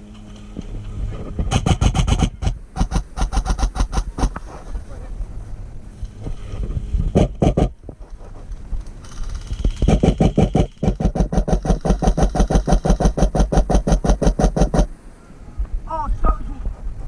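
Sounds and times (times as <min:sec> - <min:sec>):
airsoft gun firing: 0:01.5 - 0:04.4, 0:09.8 - 0:14.9.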